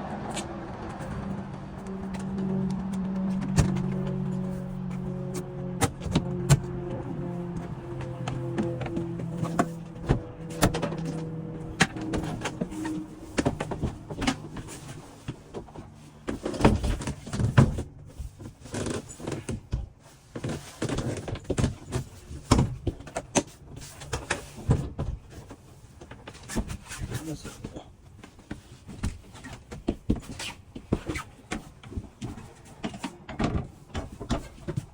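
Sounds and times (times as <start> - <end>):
doors and latches opening and shutting: 0.2 - 15.0.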